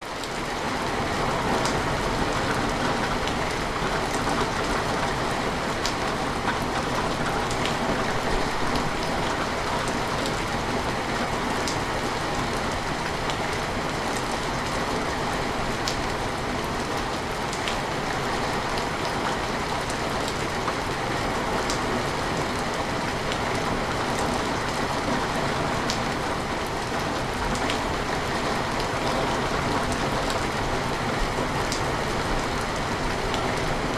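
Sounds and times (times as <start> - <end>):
rain on window glass: 0.1 - 33.9.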